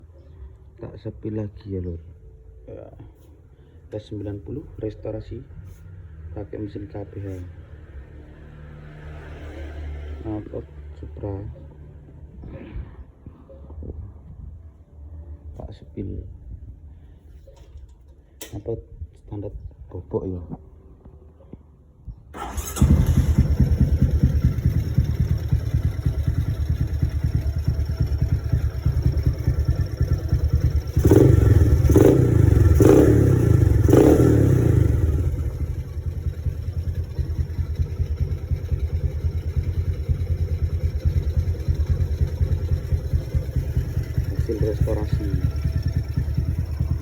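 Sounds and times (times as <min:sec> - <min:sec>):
motorcycle engine idling and revving: 0:05.2 - 0:15.6, 0:22.4 - 0:47.0.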